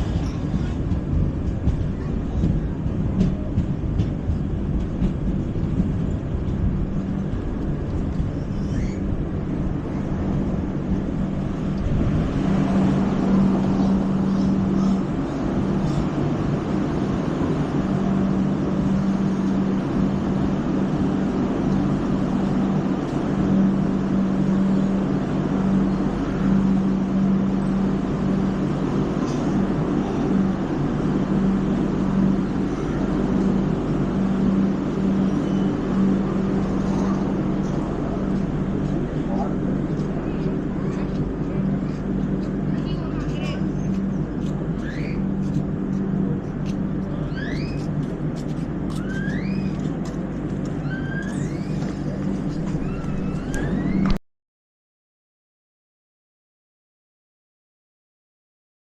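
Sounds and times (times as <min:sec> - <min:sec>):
constant low hum: 0:00.0 - 0:54.2
train wheels rumbling on rail: 0:00.0 - 0:54.2.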